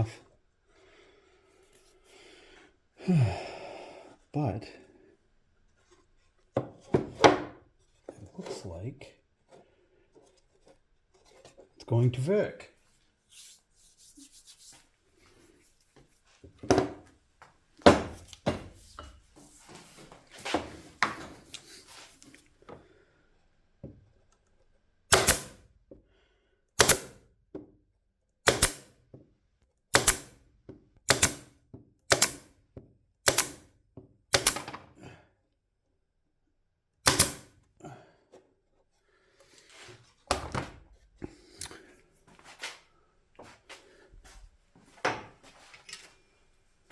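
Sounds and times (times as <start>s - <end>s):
tool handling clicks and rustling: 17.8s - 22.5s, 32.1s - 32.5s, 33.3s - 33.7s, 34.4s - 35.0s, 37.1s - 37.5s
regular sharp clicks: 30.0s - 30.4s, 31.1s - 31.5s, 32.1s - 32.5s, 33.3s - 33.7s, 34.4s - 34.7s.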